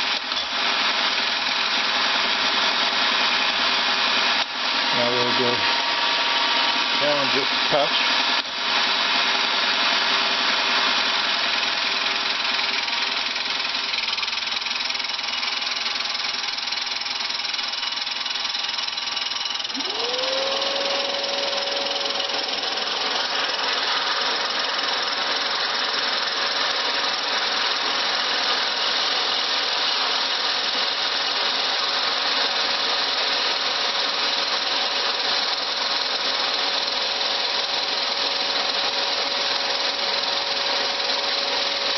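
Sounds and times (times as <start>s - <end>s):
grinding wheel on stone: 0.0s - 41.9s
motor whine: 17.9s - 33.1s.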